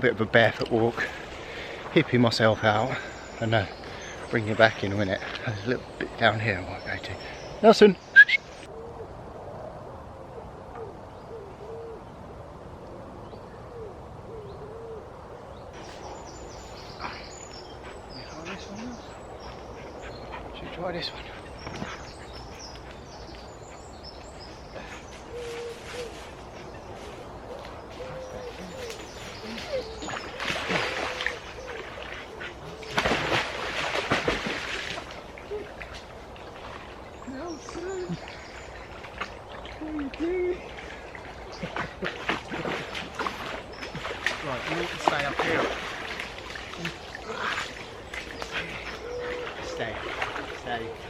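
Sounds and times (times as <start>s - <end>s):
steady outdoor hiss: 0.0s - 51.0s
bird cooing: 8.2s - 9.2s, 10.1s - 12.2s, 12.9s - 15.1s, 24.7s - 33.4s, 46.7s - 51.0s
water splashing in a river: 29.1s - 51.0s.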